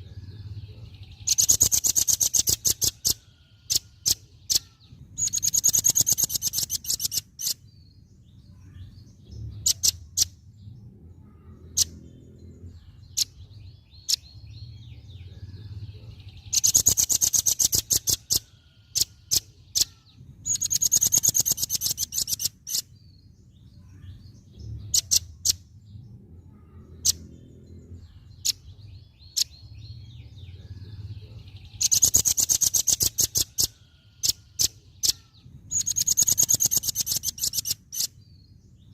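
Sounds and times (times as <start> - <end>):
bird chattering trills: 0.0 - 7.8, 9.5 - 10.5, 15.3 - 23.1, 23.8 - 25.9, 26.5 - 38.9
sharp bird chips: 1.1 - 7.7, 16.4 - 23.1, 31.7 - 38.6
faint low hum: 3.0 - 16.9, 22.9 - 37.4.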